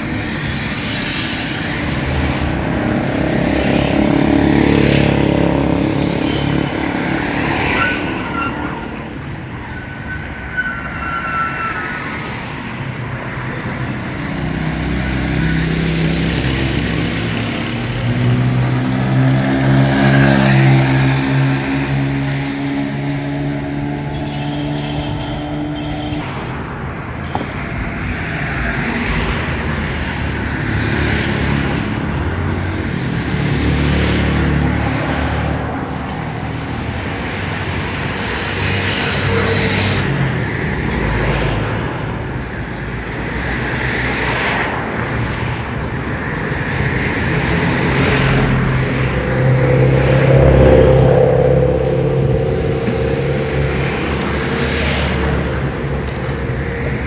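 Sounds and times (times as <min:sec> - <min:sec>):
road traffic: 0:00.0 - 0:57.0
vehicle engine passing: 0:14.7 - 0:26.5, 0:45.7 - 0:57.0.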